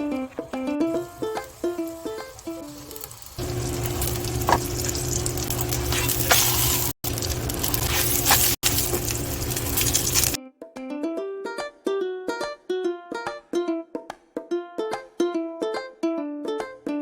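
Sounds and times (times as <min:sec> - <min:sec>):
batter sizzling in oil: 0:00.0 - 0:10.4.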